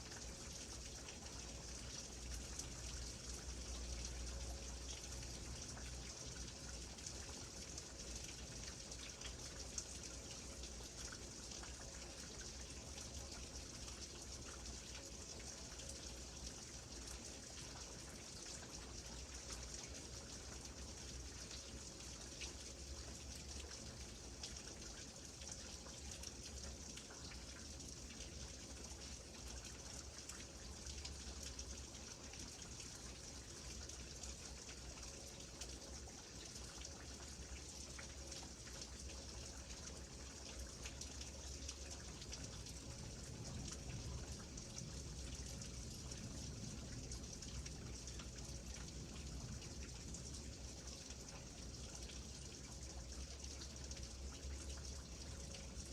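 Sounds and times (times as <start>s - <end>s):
rain pattering: 0.0s - 55.9s
trickle of running water: 0.0s - 55.9s.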